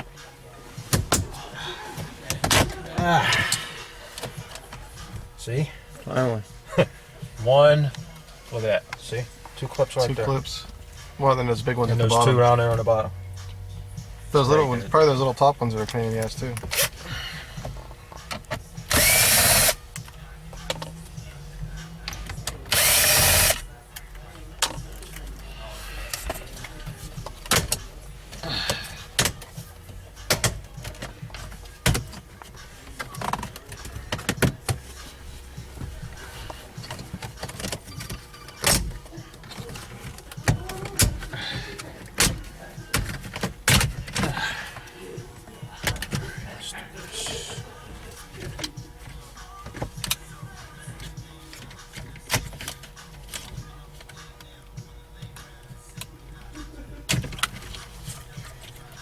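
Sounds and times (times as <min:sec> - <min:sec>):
power drill running: 0:18.9 - 0:19.8, 0:22.7 - 0:23.6.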